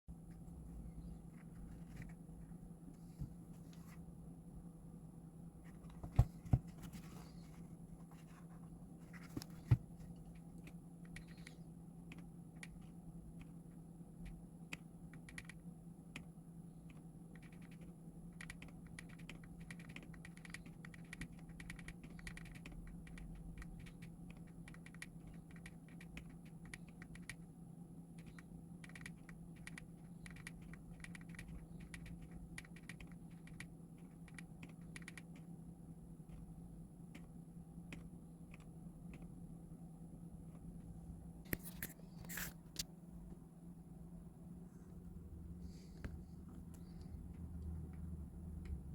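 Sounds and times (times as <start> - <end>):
mechanical keyboard typing: 14.2 - 16.3, 16.9 - 27.4, 28.2 - 35.5.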